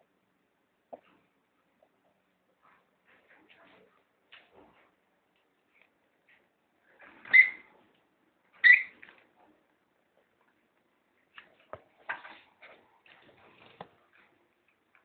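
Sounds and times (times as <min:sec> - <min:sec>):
soft clicks and scratching: 0:00.9 - 0:07.2
lovebird chirping: 0:08.6 - 0:09.0.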